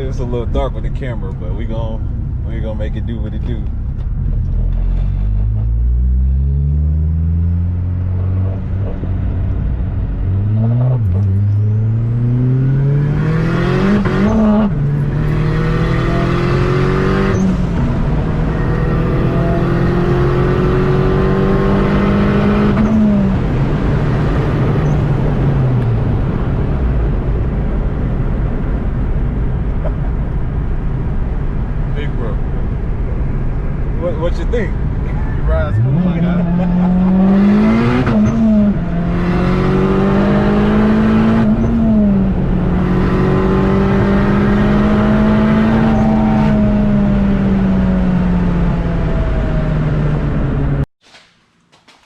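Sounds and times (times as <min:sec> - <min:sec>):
road noise: 0:00.0 - 0:50.9
car engine revving through gears: 0:03.5 - 0:26.7, 0:34.3 - 0:50.9.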